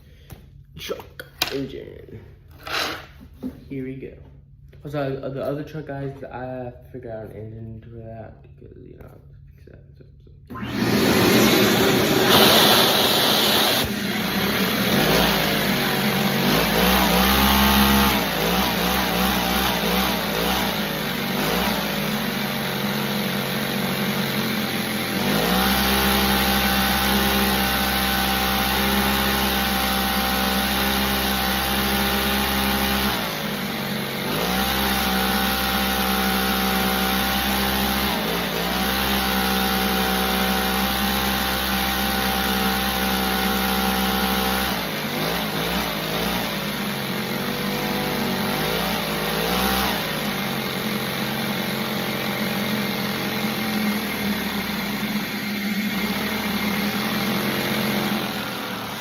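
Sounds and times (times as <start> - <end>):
truck engine revving: 10.5 - 22.3, 34.1 - 46.9, 47.8 - 51.4.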